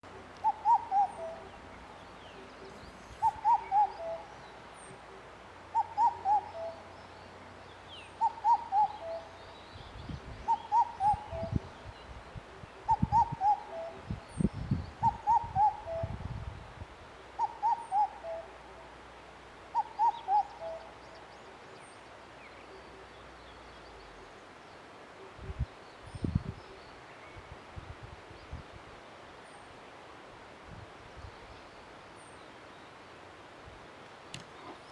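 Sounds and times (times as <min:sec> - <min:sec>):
cuckoo four-note call: 0:02.6 - 0:04.3, 0:17.4 - 0:18.6.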